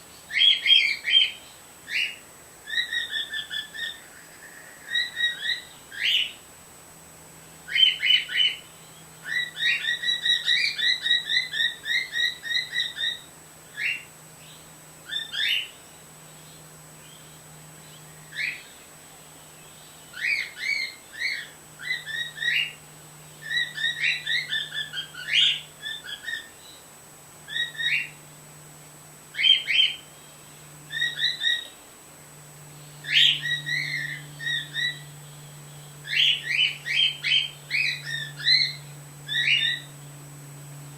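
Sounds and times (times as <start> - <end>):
faint low hum: 0.0 - 40.9
cockatiel chirping: 0.3 - 4.0, 4.9 - 6.4, 9.2 - 14.0, 15.1 - 15.7, 20.1 - 22.8, 23.4 - 26.5, 27.5 - 28.2, 30.9 - 31.7, 33.0 - 35.1, 36.0 - 39.9.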